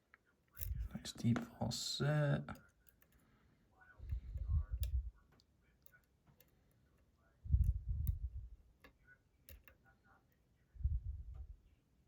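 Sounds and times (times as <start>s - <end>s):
low rumble of handling noise: 3.9s - 5.3s, 7.2s - 8.7s, 10.7s - 11.8s.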